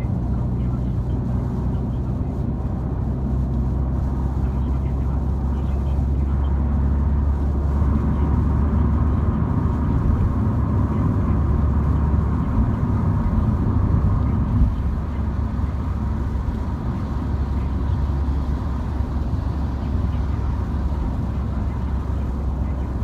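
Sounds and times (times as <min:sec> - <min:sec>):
car engine rumble: 0:00.0 - 0:23.0
road noise: 0:00.0 - 0:23.0.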